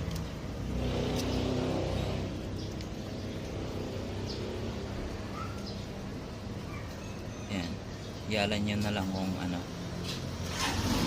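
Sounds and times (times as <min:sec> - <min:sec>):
faint high chirps: 0:06.6 - 0:08.2.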